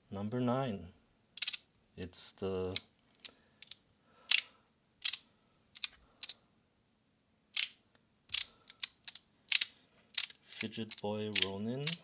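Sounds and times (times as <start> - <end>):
plastic fidget slider clicking: 1.4 - 1.6, 3.2 - 5.2, 5.8 - 6.4, 7.6 - 12.0.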